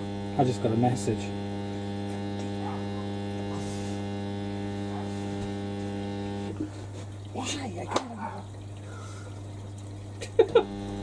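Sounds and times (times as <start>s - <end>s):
washing machine valve humming: 0.0s - 4.9s, 5.5s - 11.0s.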